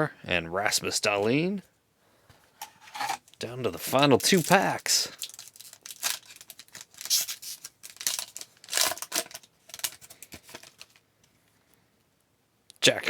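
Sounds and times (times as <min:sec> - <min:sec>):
soft handling sounds: 0:01.6 - 0:12.2
wrapper tearing and crinkling: 0:03.8 - 0:11.0.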